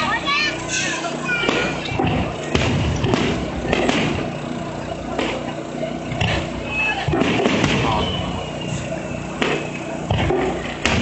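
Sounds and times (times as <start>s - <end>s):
background murmur: 0.0s - 11.0s
fireworks booming: 1.3s - 4.5s, 6.1s - 11.0s.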